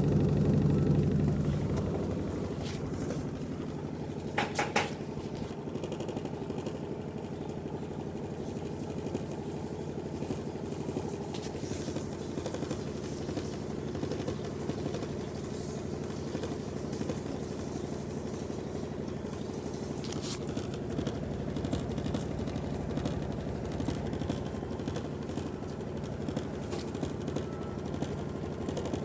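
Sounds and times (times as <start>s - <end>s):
washing machine running: 0.0s - 29.0s
sharp knocks: 4.4s - 5.0s.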